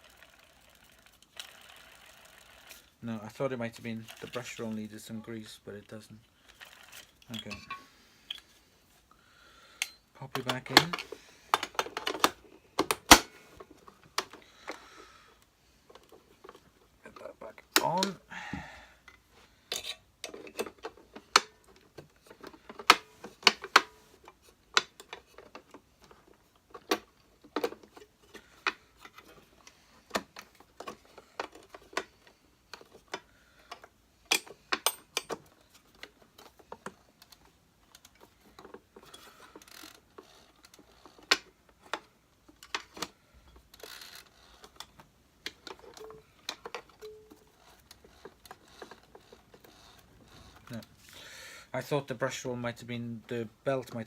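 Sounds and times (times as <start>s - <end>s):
vacuum cleaner parts clicking: 9.7s - 18.3s, 19.0s - 51.2s.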